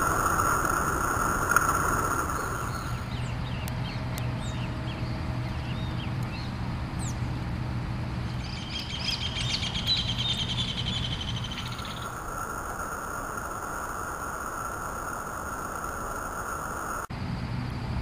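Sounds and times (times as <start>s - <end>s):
fast twittering trill: 0.0s - 3.6s, 8.3s - 17.1s
small birds chirping: 0.0s - 7.3s, 8.2s - 17.1s
steady rushing noise: 0.0s - 18.0s.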